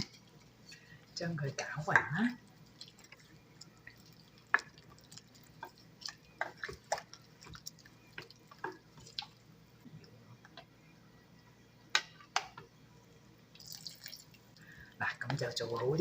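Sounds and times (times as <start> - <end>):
liquid drips and splashes: 2.6 - 9.4, 13.6 - 14.8.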